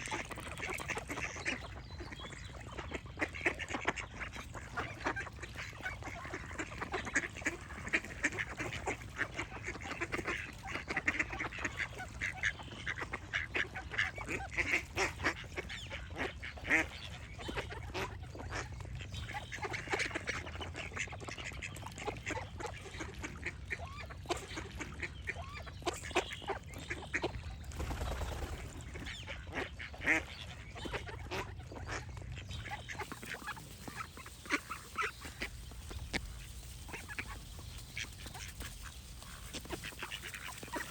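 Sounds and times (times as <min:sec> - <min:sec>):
ducks quacking: 0:00.0 - 0:40.9.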